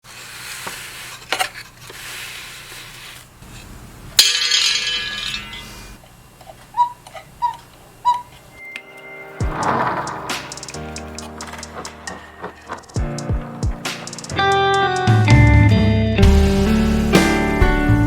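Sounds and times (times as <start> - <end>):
ringing metallic strike: 8.6 - 11.3.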